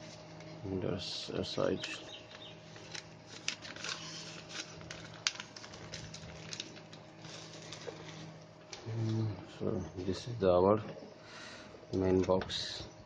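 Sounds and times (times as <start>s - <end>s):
cardboard and paper packaging crinkling: 2.3s - 8.4s.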